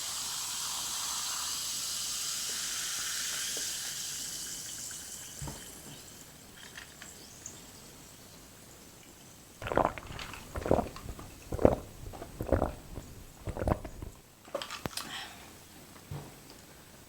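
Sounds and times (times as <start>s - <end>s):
clicky mouth sounds: 9.6s - 14.2s
close-miked chewing: 9.6s - 14.2s.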